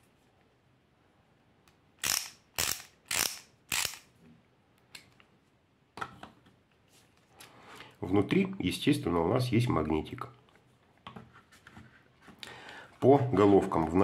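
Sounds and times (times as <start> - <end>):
ratchet screwdriver clicking: 2.0 - 4.1.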